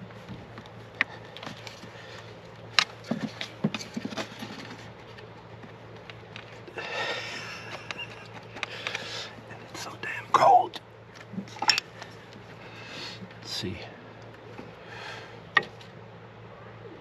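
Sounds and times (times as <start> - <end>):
tools clicking and knocking on parts: 11.4 - 12.1.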